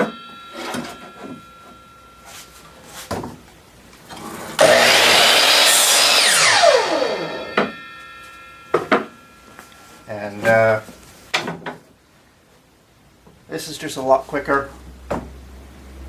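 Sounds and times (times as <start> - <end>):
mitre saw cutting wood: 4.6 - 7.8.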